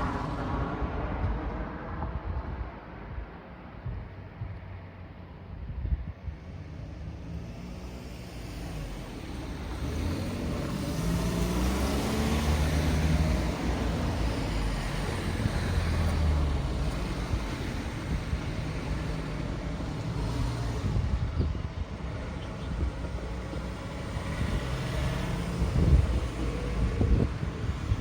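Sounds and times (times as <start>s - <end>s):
road traffic noise: 0.0s - 28.0s
vehicle engine accelerating: 6.4s - 28.0s.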